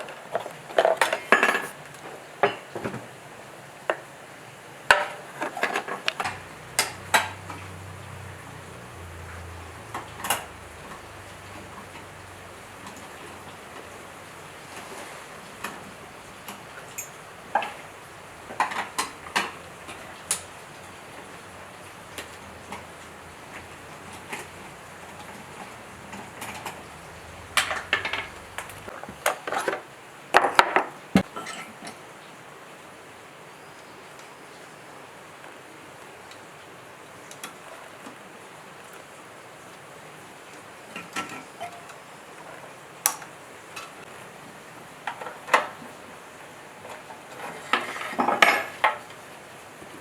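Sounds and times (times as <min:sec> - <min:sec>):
metal tools clinking and clanking: 0:00.0 - 0:01.8.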